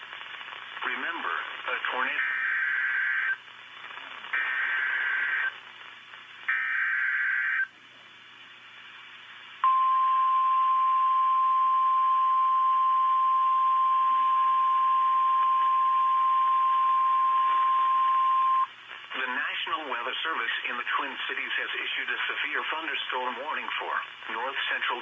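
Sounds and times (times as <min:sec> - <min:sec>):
data tone bursts: 0:09.6 - 0:18.7.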